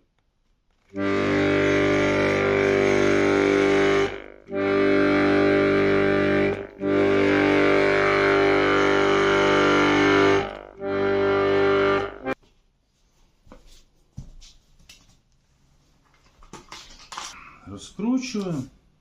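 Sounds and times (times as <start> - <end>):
accordion bass notes: 0.9 - 12.4.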